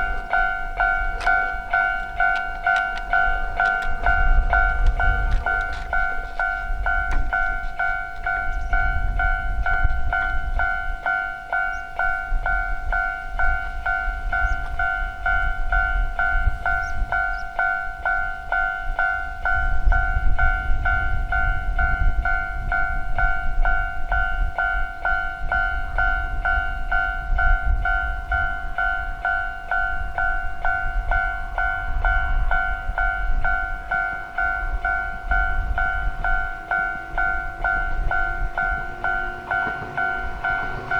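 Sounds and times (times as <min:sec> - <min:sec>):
railroad crossing bell ringing: 0:00.0 - 0:40.9
low rumble: 0:37.0 - 0:40.9.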